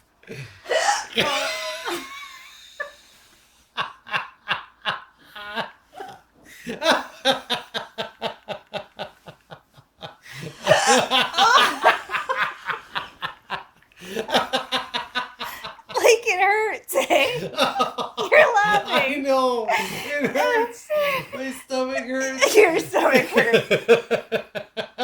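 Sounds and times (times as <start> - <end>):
person laughing hard: 0.7 - 2.9, 10.3 - 16.1, 17.1 - 19.1.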